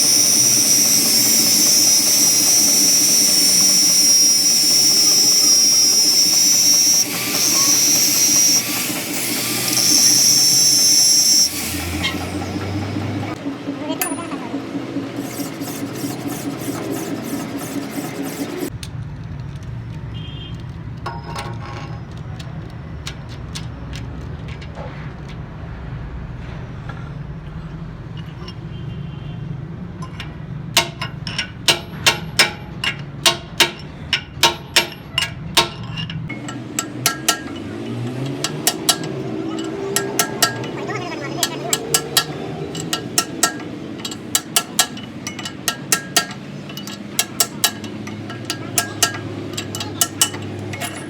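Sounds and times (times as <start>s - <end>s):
hammer blows on steel: 0.0s - 12.6s, 30.0s - 51.0s
pitched machine hum: 0.0s - 18.7s, 36.3s - 51.0s
low workshop rumble: 0.0s - 18.8s, 20.9s - 51.0s
metal clinks: 30.0s - 51.0s.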